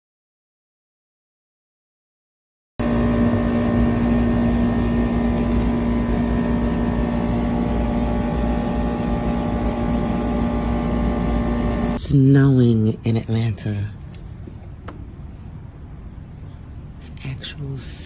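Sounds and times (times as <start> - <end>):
motor drone with low rumble: 2.8 - 12.0.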